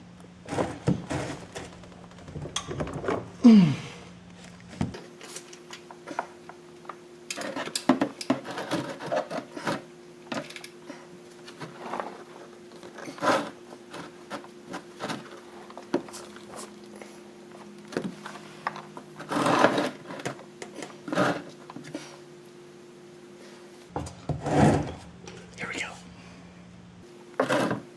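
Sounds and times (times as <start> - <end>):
steady low hum: 0.0 - 27.9
tools scraping: 7.3 - 22.1, 27.3 - 27.9.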